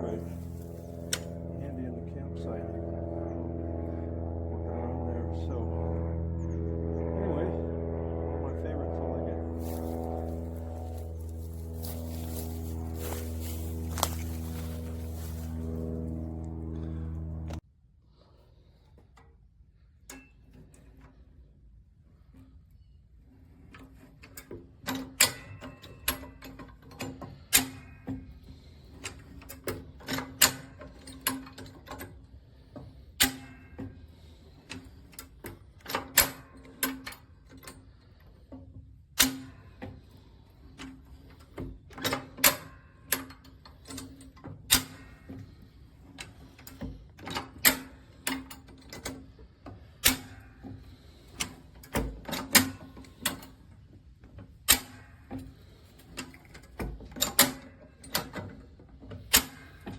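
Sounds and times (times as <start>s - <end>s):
steady low hum: 0.0s - 18.8s.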